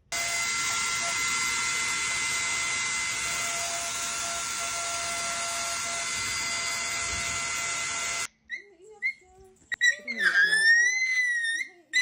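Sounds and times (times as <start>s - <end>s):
appliance motor hissing and whining: 0.0s - 8.3s.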